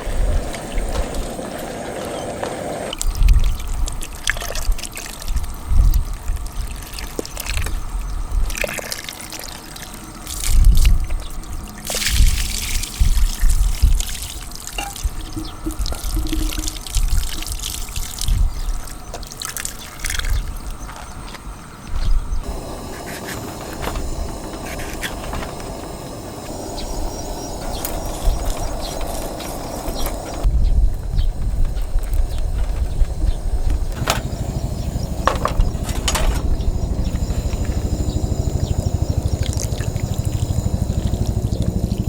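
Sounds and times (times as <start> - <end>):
water trickling and splashing: 8.5 - 20.4.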